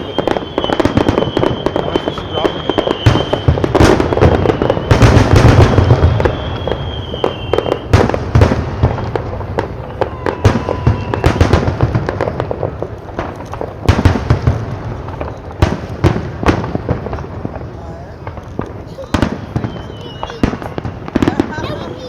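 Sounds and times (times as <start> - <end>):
high whistle: 0.0 - 7.9, 8.9 - 11.6, 19.6 - 21.1
fireworks bangs and crackling: 0.0 - 22.0.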